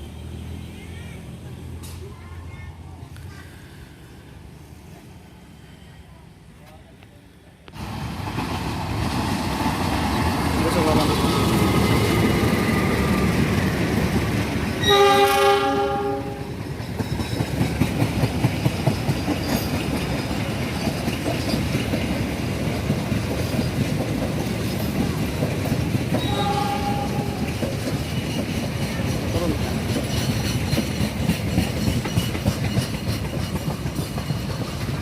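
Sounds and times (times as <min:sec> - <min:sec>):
train rumbling past: 0:00.0 - 0:35.0
wheels clacking over rail joints: 0:07.7 - 0:35.0
locomotive horn chord: 0:14.8 - 0:16.5, 0:26.2 - 0:27.3.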